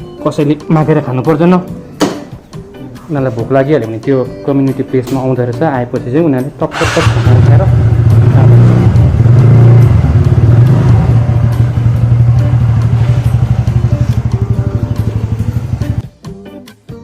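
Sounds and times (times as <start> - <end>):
motor scooter engine hum: 6.8 - 16.0
guitar music: 7.4 - 17.0.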